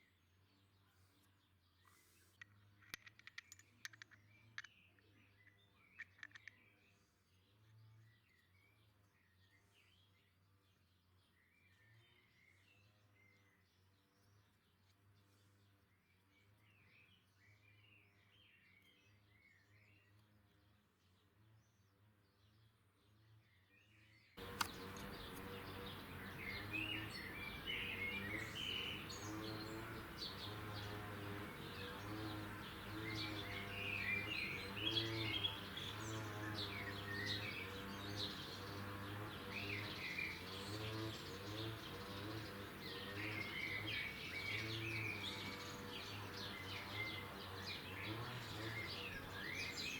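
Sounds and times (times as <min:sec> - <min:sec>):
small birds chirping: 0:00.0 - 0:49.9
steady low hum: 0:24.4 - 0:47.5.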